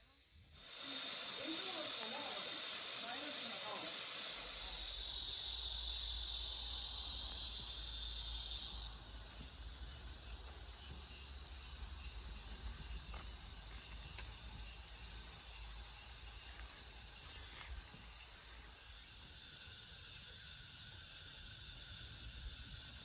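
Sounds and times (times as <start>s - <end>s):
loud high hiss: 0.0s - 9.0s
faint hiss: 0.0s - 11.2s.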